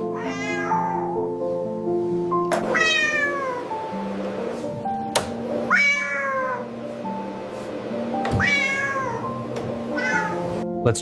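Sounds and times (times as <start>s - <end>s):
cat meowing: 0.0s - 1.2s, 2.7s - 3.6s, 5.7s - 6.7s, 8.4s - 10.5s
background music with held notes: 0.0s - 11.0s.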